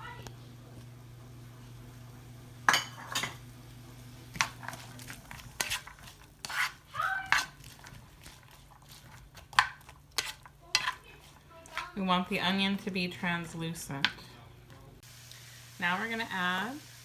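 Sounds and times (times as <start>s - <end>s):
onions sizzling in a pan: 0.0s - 12.0s, 15.0s - 17.0s
utensil scraping a pan: 4.3s - 12.0s.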